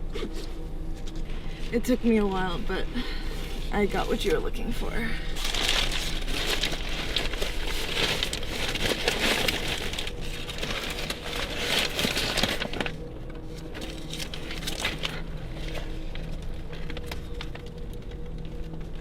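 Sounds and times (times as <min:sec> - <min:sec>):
faint steady hum: 0:00.0 - 0:19.0
package crinkling and rustling: 0:00.0 - 0:19.0.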